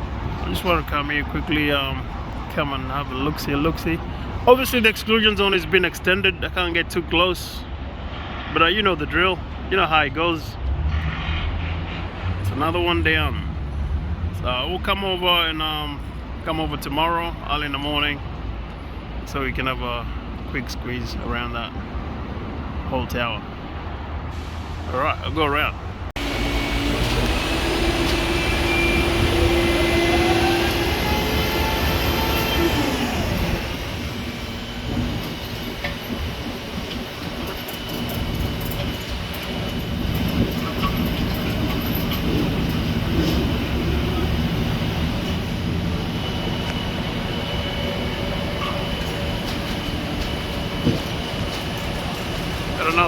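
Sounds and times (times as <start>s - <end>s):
vehicle engine and road noise: 0.0s - 53.0s
whine rising and falling: 26.2s - 35.0s.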